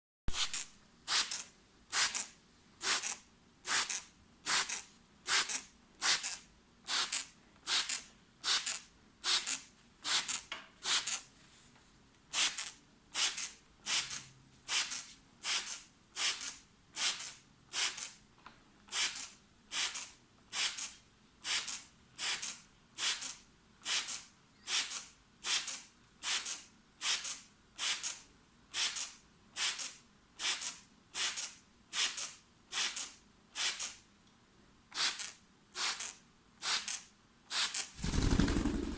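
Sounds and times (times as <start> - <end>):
spray bottle squirting: 0.3 - 1.4, 2.0 - 11.2.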